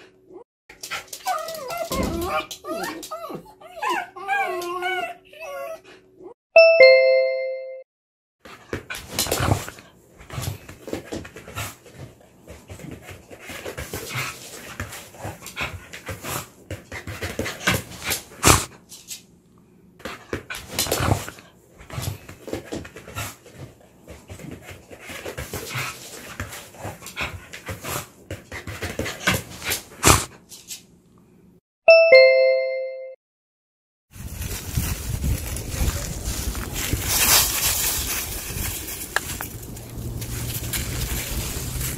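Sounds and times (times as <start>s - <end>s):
dog clicks and rustles: 0.7s - 3.2s, 34.4s - 41.9s
two-note ding-dong chime: 6.6s - 7.8s, 31.9s - 33.2s.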